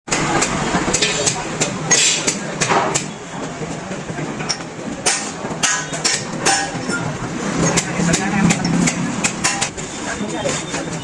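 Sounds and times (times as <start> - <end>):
workshop background: 0.1 - 11.0
hammer clanking on metal: 4.5 - 9.8.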